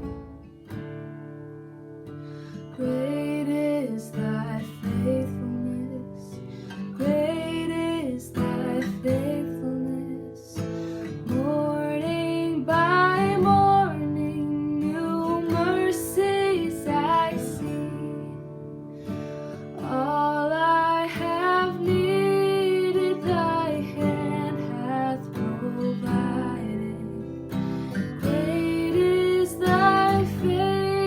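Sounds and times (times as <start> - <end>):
acoustic guitar strumming: 0.0 - 3.2, 10.6 - 31.0
person singing: 19.8 - 27.3, 28.0 - 31.0.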